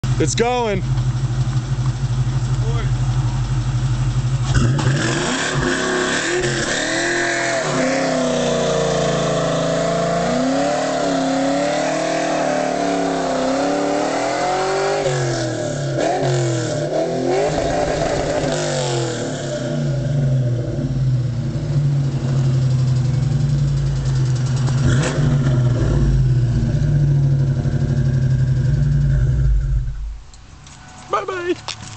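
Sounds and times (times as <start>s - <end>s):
car engine revving hard: 4.4s - 21.0s, 24.5s - 29.9s.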